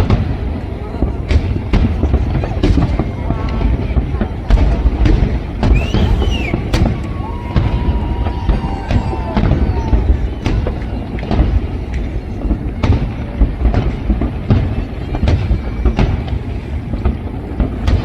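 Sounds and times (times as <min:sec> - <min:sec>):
firework whistling: 0:00.0 - 0:18.0
fireworks bangs: 0:00.0 - 0:18.0
low rumble: 0:01.4 - 0:12.8.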